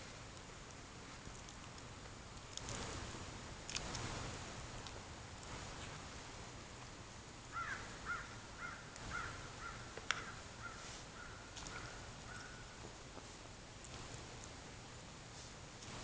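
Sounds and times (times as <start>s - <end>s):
crow cawing: 7.5s - 12.8s.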